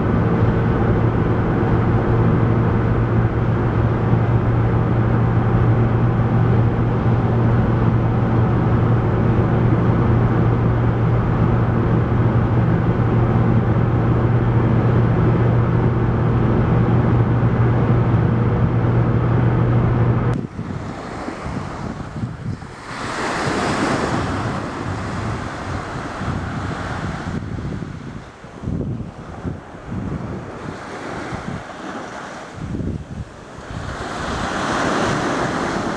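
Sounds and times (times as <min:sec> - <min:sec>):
car engine and road noise: 0:00.0 - 0:35.9
wind on microphone: 0:00.0 - 0:35.9
surf waves: 0:20.3 - 0:35.9.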